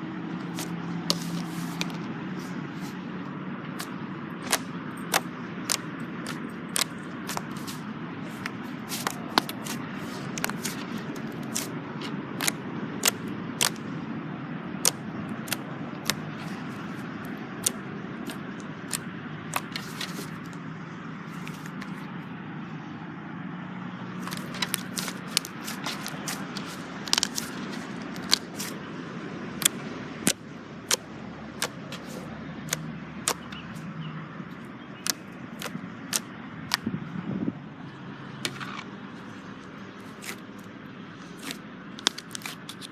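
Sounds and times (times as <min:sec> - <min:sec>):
slime squishing: 0:00.4 - 0:03.1, 0:03.7 - 0:13.8, 0:14.7 - 0:20.6, 0:24.2 - 0:28.8, 0:29.5 - 0:33.8, 0:35.0 - 0:36.8, 0:38.5 - 0:42.9.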